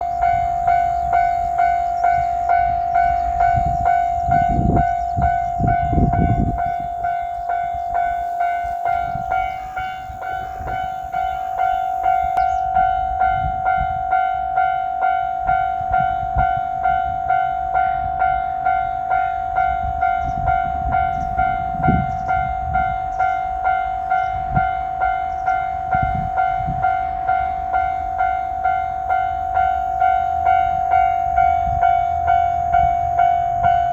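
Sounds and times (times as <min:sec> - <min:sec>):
level crossing bell ringing: 0:00.0 - 0:33.9.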